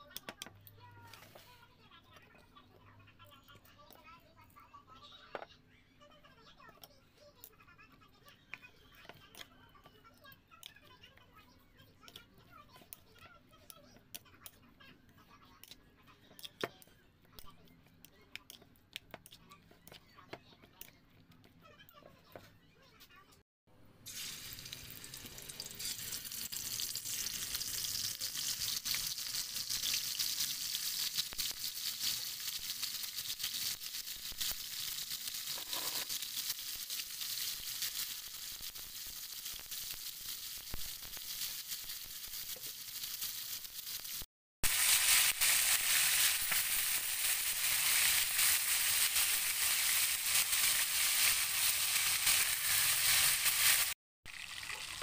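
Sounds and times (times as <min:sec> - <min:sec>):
food sizzling in hot oil: 0:24.0 - 0:55.0.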